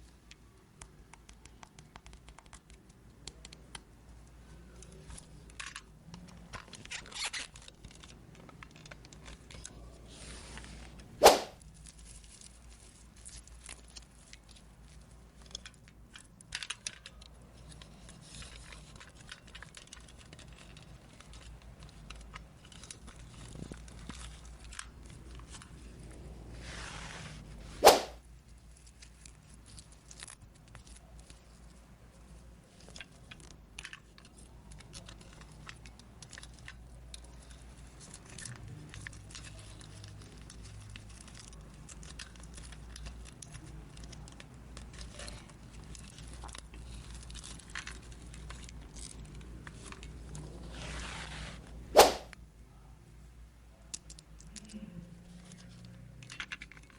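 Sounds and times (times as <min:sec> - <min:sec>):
sharp loud click: 0:11.2 - 0:11.6, 0:27.8 - 0:28.2, 0:52.0 - 0:52.3
plastic parts clicking: 0:15.4 - 0:25.7, 0:53.9 - 0:56.9.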